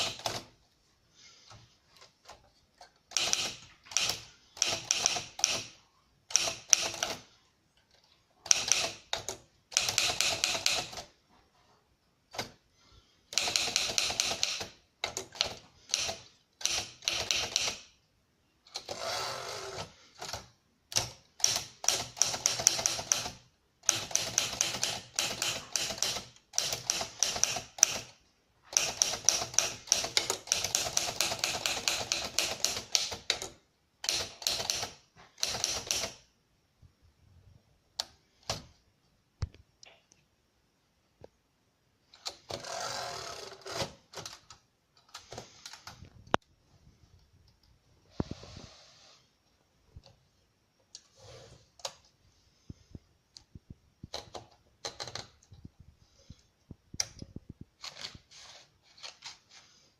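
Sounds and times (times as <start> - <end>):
typewriter keys striking: 3.1 - 5.7, 8.5 - 11.1, 13.4 - 17.8, 20.2 - 28.1, 28.7 - 36.2.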